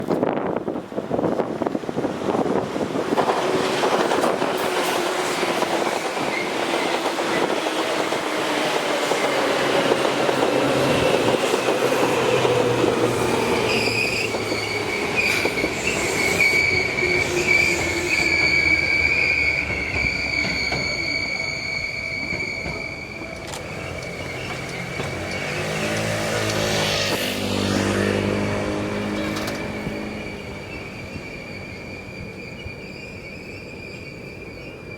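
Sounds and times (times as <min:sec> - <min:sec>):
train braking whine: 0:03.7 - 0:34.9
high brake squeal: 0:13.1 - 0:34.9.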